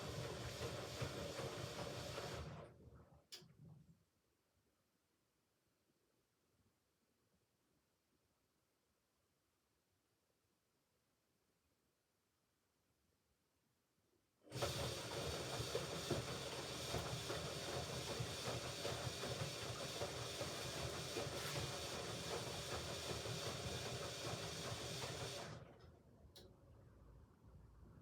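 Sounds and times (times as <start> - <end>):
water hissing into washing machine: 0.0 - 2.5, 14.5 - 25.7.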